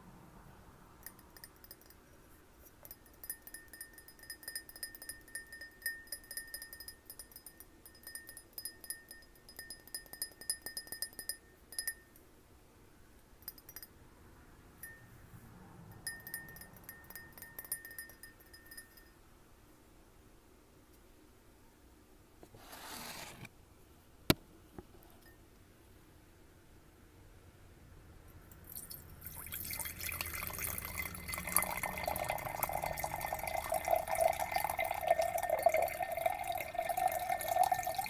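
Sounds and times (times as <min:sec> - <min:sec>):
glass tapped lightly ringing: 0:02.8 - 0:12.2, 0:16.1 - 0:19.2.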